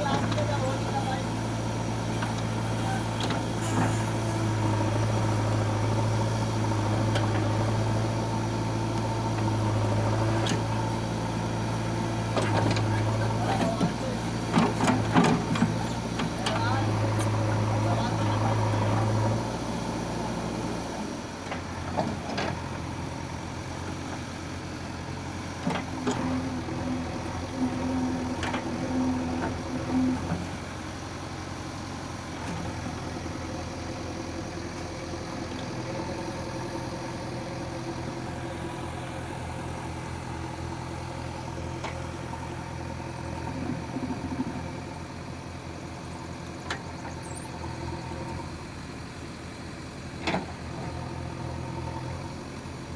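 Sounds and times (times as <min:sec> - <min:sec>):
engine running: 0:00.0 - 0:52.9.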